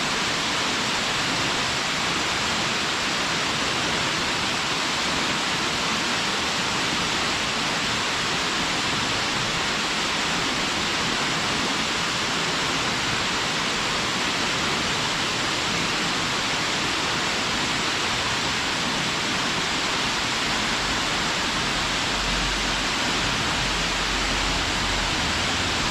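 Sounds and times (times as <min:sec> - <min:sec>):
waterfall splashing: 0:00.0 - 0:25.9
low rumble: 0:20.6 - 0:25.9.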